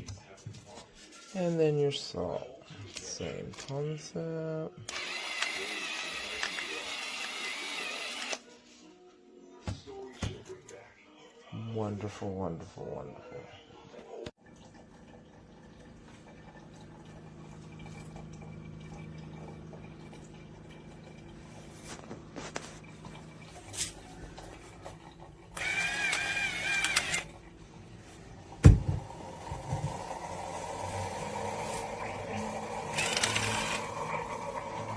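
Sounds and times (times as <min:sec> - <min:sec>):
electric grinder motor whining: 0:04.9 - 0:08.4, 0:25.6 - 0:27.2, 0:32.2 - 0:34.9.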